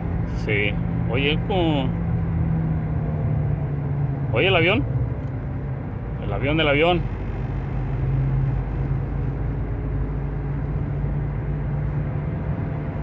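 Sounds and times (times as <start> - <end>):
tyre and road noise: 0.0 - 13.0
wheel bearing low drone: 7.0 - 13.0.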